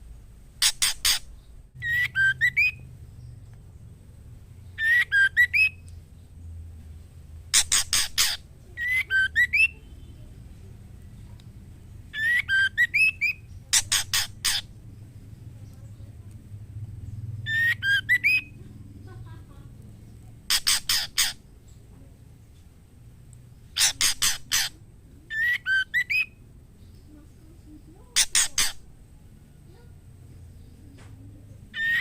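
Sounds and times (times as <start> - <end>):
harsh rasping bird notes: 0.6 - 2.8, 7.5 - 10.1, 12.2 - 14.8, 17.5 - 18.6, 20.4 - 21.5, 23.6 - 26.4, 28.2 - 28.9
bird whistled phrases: 1.8 - 2.8, 4.8 - 5.9, 7.6 - 10.0, 12.1 - 14.7, 17.5 - 18.6, 23.8 - 26.4, 31.7 - 32.0.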